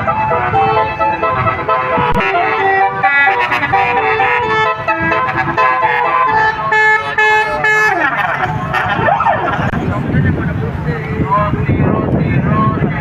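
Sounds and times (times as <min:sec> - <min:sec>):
bus horn playing a tune: 0:00.0 - 0:09.8.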